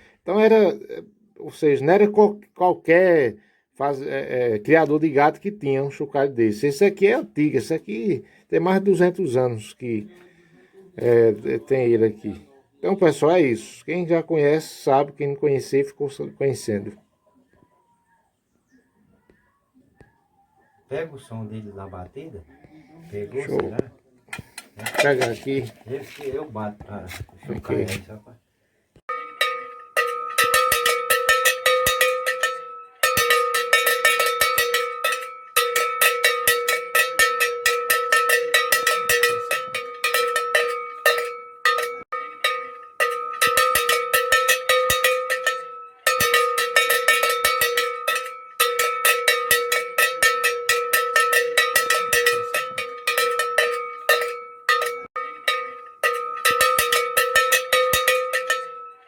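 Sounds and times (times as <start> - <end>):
cattle bell clanking: 24.4 - 26.4, 29.1 - 59.0.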